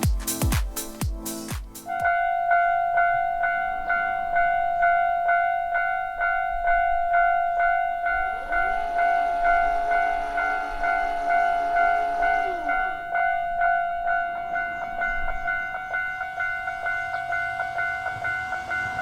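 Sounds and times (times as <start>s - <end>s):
level crossing bell clanging: 2.0s - 19.0s
approaching train hum: 5.6s - 19.0s.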